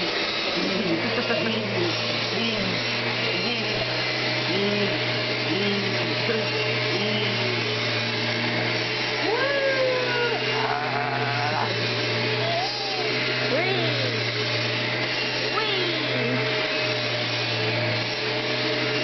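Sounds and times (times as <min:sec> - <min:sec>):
short rising and falling vocal sounds: 0:00.0 - 0:07.8, 0:09.1 - 0:14.4
vacuum cleaner running: 0:00.0 - 0:19.0.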